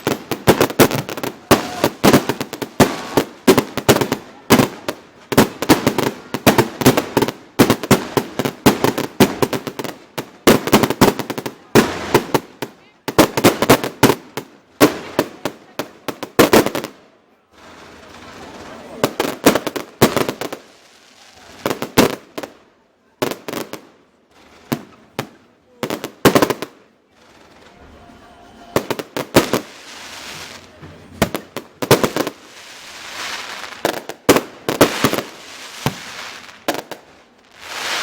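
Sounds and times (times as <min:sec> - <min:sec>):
fireworks hissing: 0:00.0 - 0:10.0, 0:27.4 - 0:38.0
fireworks bangs: 0:00.0 - 0:38.0.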